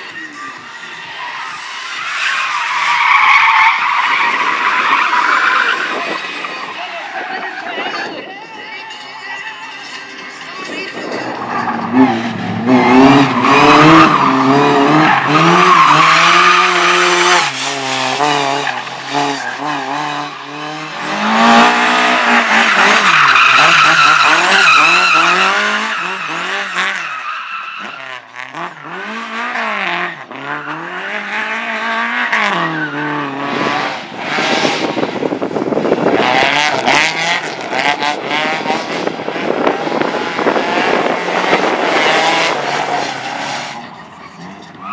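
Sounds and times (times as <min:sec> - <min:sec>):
race car engine revving: 0:09.4 - 0:44.9
tyres squealing: 0:22.6 - 0:28.1.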